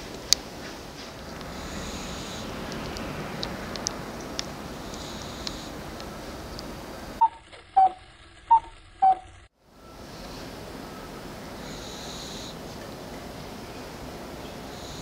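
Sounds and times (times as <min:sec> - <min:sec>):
steady hiss: 0:00.0 - 0:15.0
cat snoring faintly: 0:01.0 - 0:07.2, 0:11.5 - 0:12.8, 0:14.2 - 0:15.0.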